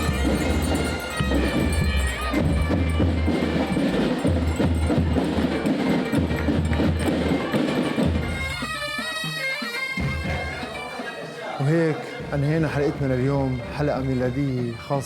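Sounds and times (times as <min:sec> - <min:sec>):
drumbeat: 0:00.0 - 0:09.0, 0:10.0 - 0:11.0
bagpipe melody: 0:00.0 - 0:15.0.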